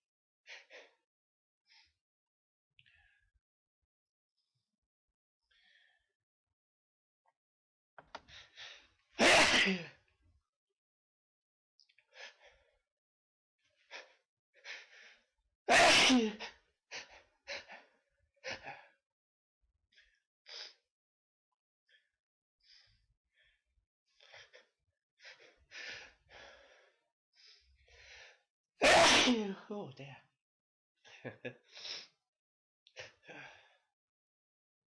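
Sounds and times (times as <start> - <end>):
person sneezing: 9.2 - 9.9, 15.7 - 16.4, 28.8 - 29.6.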